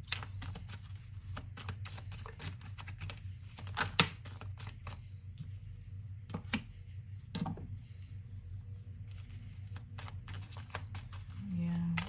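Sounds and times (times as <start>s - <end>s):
steady low hum: 0.0s - 12.0s
cards clicking and rustling: 0.1s - 5.0s, 9.1s - 12.0s.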